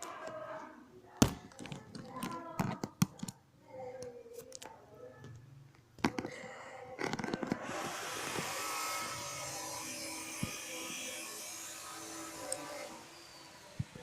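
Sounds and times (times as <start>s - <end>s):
small electric motor running: 7.6s - 14.0s.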